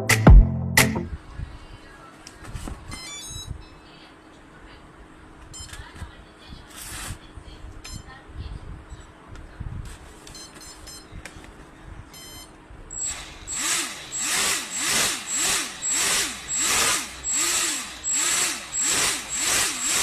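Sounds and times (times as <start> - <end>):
short beeps: 2.9 - 3.8, 5.6 - 5.8, 7.9 - 8.1, 10.4 - 11.1, 12.2 - 13.1
electric motor pulsing: 13.0 - 20.0.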